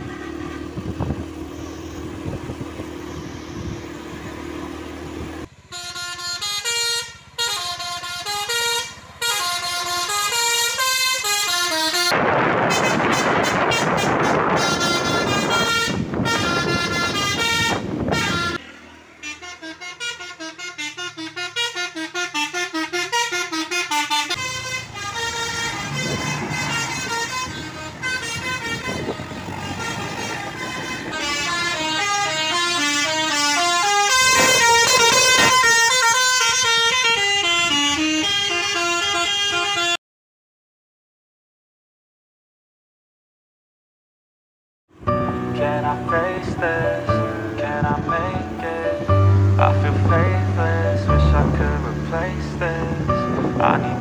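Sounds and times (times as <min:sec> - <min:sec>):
bus musical horn melody: 0:00.0 - 0:04.6, 0:05.2 - 0:40.0, 0:45.0 - 0:54.0
loud rushing noise: 0:12.1 - 0:16.2.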